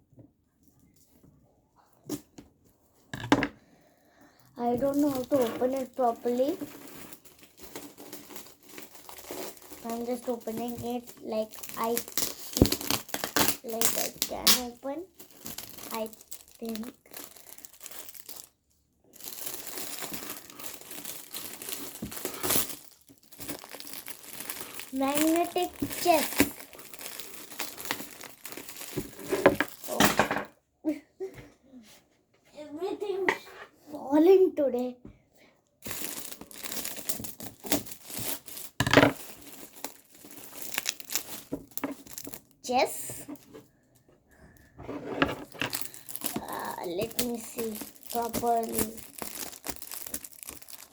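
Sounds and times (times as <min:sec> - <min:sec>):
gift wrapping crumpled and torn: 0:04.6 - 0:30.2, 0:35.8 - 0:43.4, 0:45.3 - 0:50.9.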